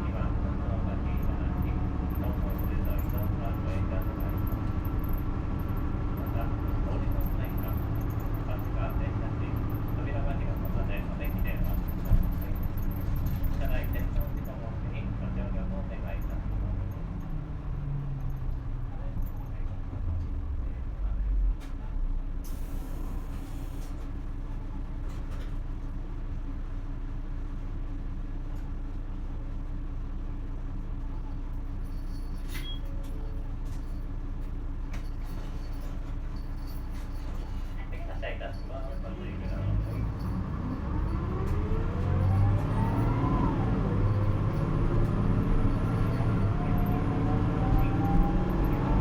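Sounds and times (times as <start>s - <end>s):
bus diesel engine rumbling: 0.0s - 49.0s
engine whine climbing: 37.9s - 49.0s
bus engine revving: 39.6s - 49.0s.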